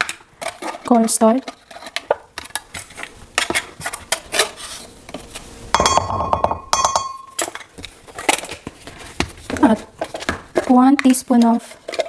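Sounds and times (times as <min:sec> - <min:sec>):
metal spoon scraping bowl: 0:00.4 - 0:05.0.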